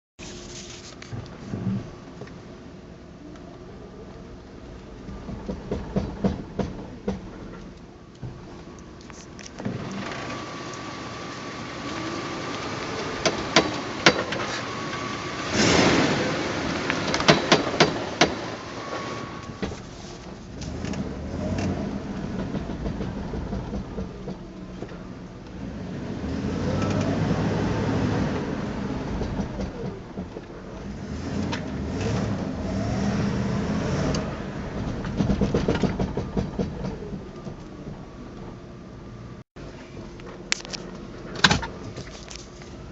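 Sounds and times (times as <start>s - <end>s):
vehicle engine running: 0.2s - 42.9s
car front end popping and clicking: 17.1s - 18.4s.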